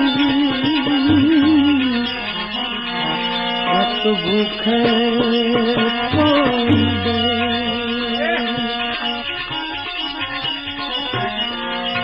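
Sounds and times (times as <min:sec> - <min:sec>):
held vocal note with vibrato: 0:00.0 - 0:09.3
rapid hand drum strokes: 0:05.6 - 0:08.2.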